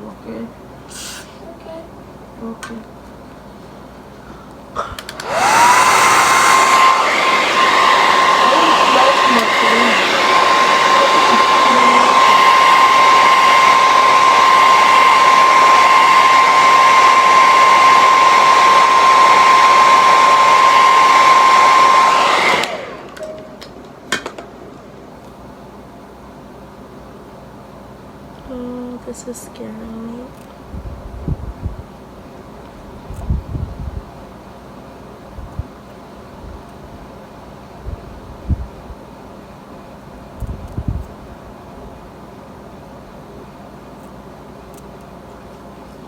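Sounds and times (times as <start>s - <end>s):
hair dryer blowing: 4.8s - 23.4s.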